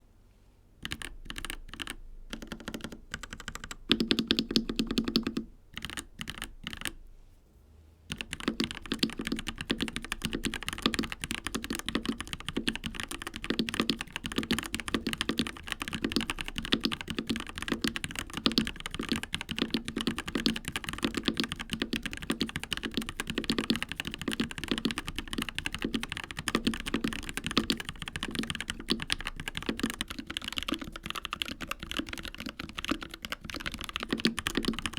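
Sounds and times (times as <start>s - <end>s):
mechanical keyboard typing: 0.8s - 7.0s, 8.1s - 34.9s.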